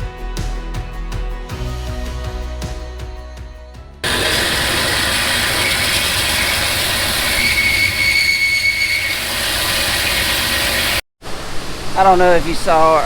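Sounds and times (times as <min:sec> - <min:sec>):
wire wheel grinder scraping steel: 0:04.0 - 0:11.0.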